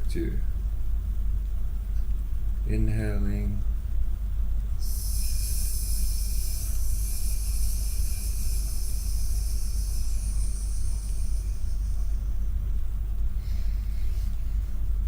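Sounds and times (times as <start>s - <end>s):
person hissing on exhale: 4.8s - 12.2s.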